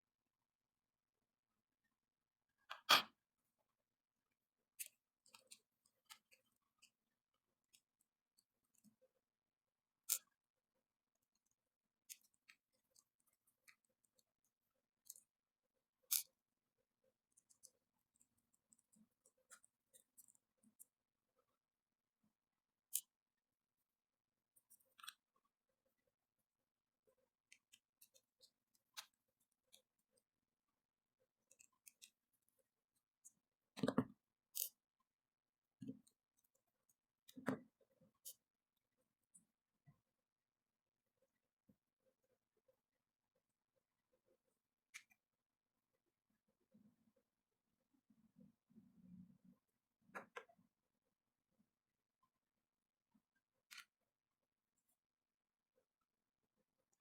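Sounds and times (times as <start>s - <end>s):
light clicks of small parts: 4.8s - 7.0s, 10.0s - 10.4s, 11.2s - 15.4s, 16.1s - 16.4s, 17.2s - 21.0s, 24.5s - 25.4s, 27.4s - 30.3s, 31.4s - 34.9s, 53.7s - 54.0s.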